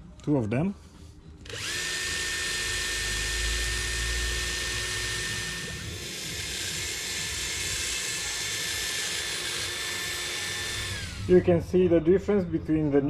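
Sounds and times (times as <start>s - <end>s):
handheld drill whining: 1.4s - 11.3s.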